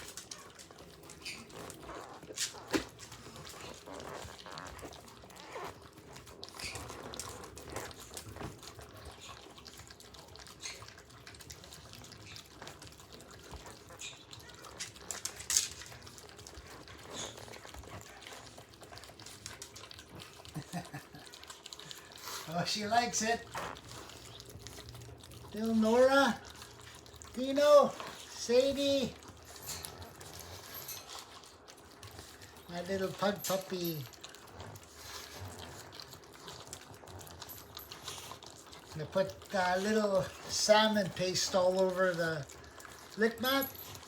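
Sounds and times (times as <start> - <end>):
dogs licking rubber mats: 0.0 - 44.0.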